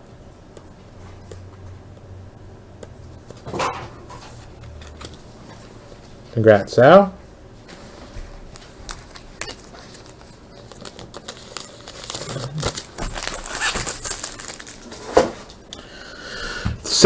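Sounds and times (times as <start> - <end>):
card pack wrapper tearing: 8.9 - 15.1.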